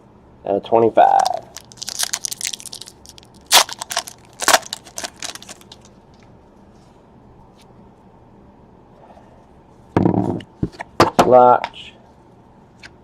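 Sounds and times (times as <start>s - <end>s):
packaging crinkling and tearing: 1.2s - 6.0s.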